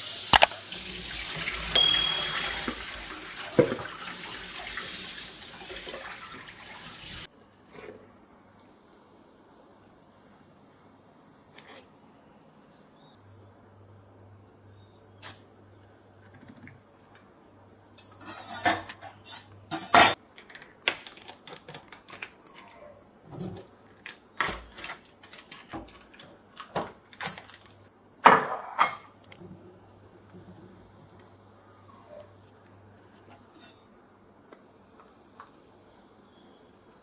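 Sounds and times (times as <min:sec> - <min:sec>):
dishes and cutlery clinking: 0:01.7 - 0:02.9.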